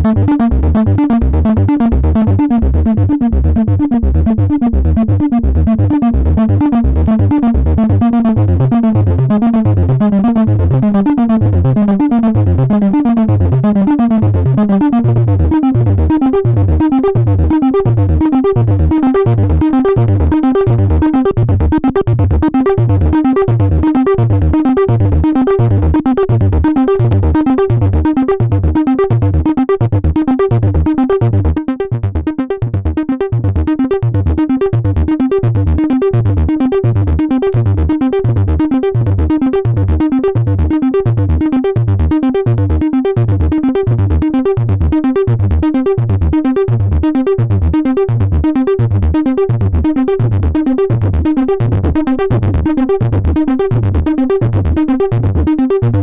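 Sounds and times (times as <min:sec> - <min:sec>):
synthesizer acid bass line: 0:00.0 - 0:56.0.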